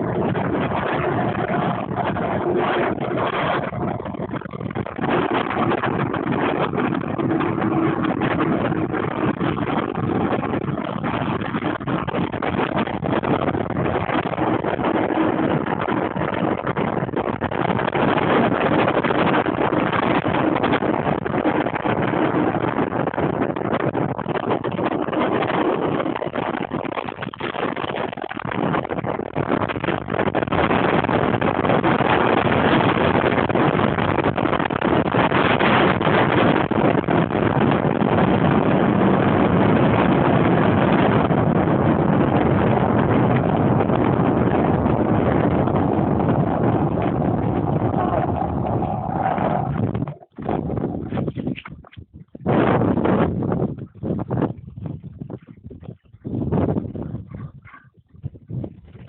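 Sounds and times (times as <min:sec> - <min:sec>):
rolling road noise: 0:00.0 - 0:18.6, 0:44.6 - 0:51.9
wind rushing over microphone: 0:00.0 - 0:59.0
rolling roar and rattle: 0:46.2 - 0:51.3.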